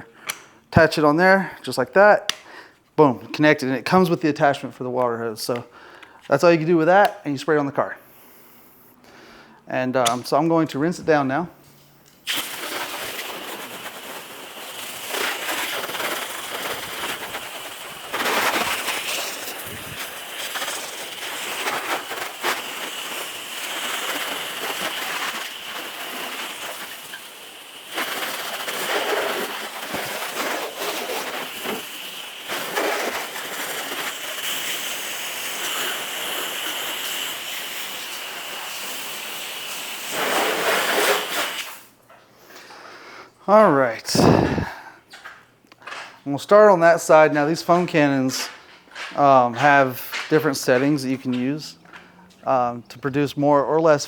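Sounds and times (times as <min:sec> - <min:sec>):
garden hose spraying water: 0:12.2 - 0:42.0.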